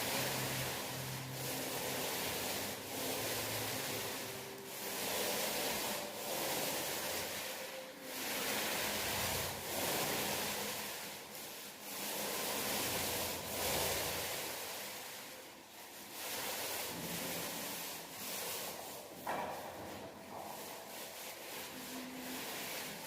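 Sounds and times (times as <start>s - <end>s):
paint roller rubbing hiss: 0.0s - 23.0s.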